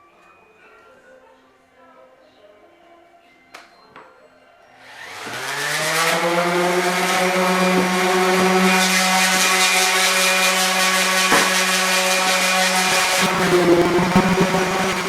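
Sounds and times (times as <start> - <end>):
floor sander motor humming: 4.9 - 15.0.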